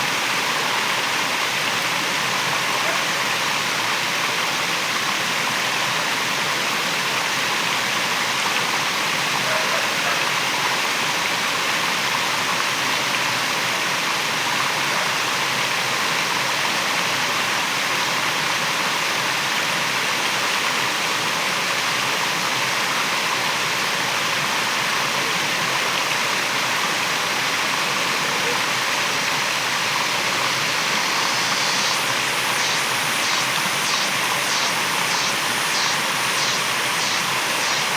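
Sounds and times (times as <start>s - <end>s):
waterfall rushing: 28.8s - 37.9s.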